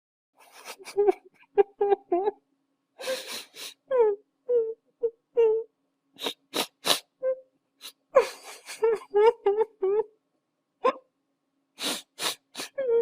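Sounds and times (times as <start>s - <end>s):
person sobbing: 0.4s - 2.4s, 3.0s - 10.1s, 11.8s - 13.0s
sharp gasping breaths: 3.0s - 3.9s, 6.2s - 7.2s, 11.8s - 12.8s.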